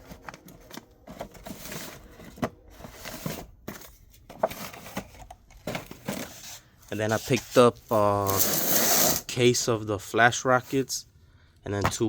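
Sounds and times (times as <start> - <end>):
cardboard and plastic rustling: 0.0 - 9.3
packages being handled: 0.0 - 9.3.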